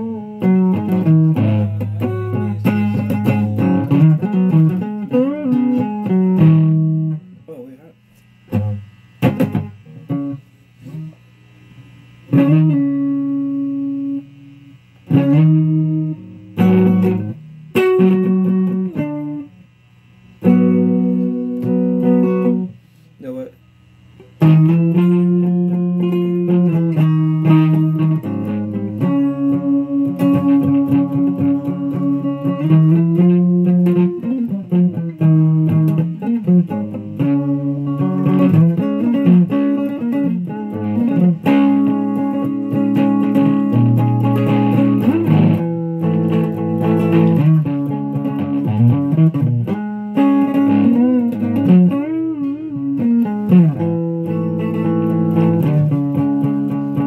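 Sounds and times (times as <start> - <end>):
fuzz electric guitar: 0.0 - 57.0.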